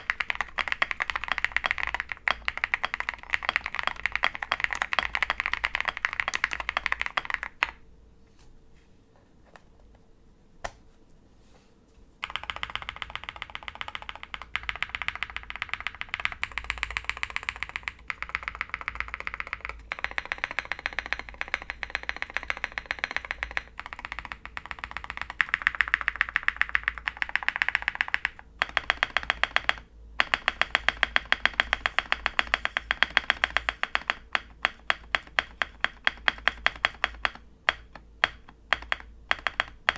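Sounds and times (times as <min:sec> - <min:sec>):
fast mechanical keyboard typing: 0:00.0 - 0:07.8, 0:12.2 - 0:39.9.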